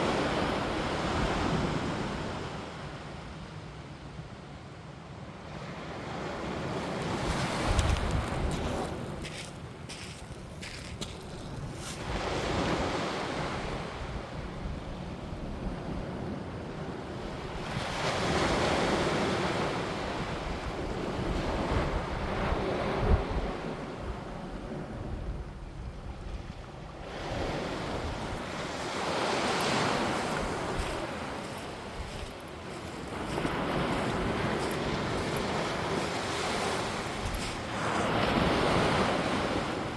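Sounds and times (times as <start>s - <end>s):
waves washing in: 5.6s - 14.4s, 26.7s - 39.9s
wind rumbling on microphone: 6.5s - 39.9s.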